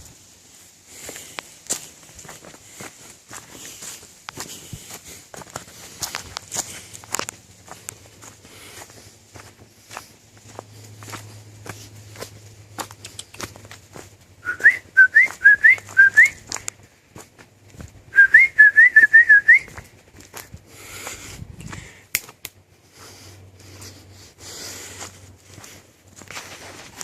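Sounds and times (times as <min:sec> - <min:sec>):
short rising whistled notes: 0:14.4 - 0:16.4.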